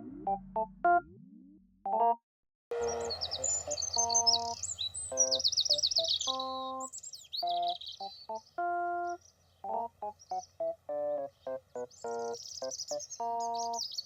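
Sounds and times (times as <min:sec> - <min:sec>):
light keyboard music: 0:00.0 - 0:01.0, 0:01.9 - 0:14.0
birds chirping and trilling: 0:02.8 - 0:14.0.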